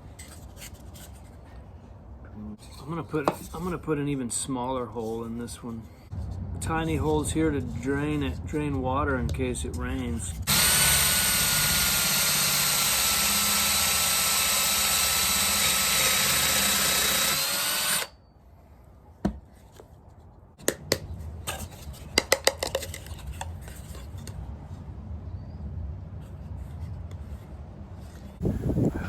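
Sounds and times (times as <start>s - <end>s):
electric drill whining: 10.5s - 18.2s.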